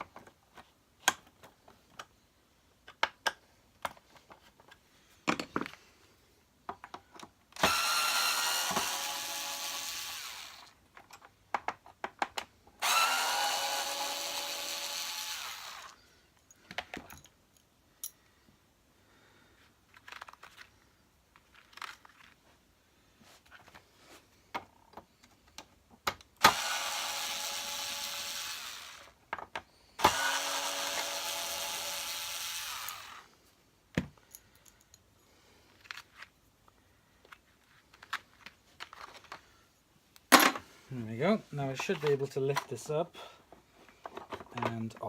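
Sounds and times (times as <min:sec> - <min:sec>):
power screwdriver whirring: 0:07.6 - 0:10.8, 0:12.8 - 0:16.0, 0:26.4 - 0:29.2, 0:30.0 - 0:33.3.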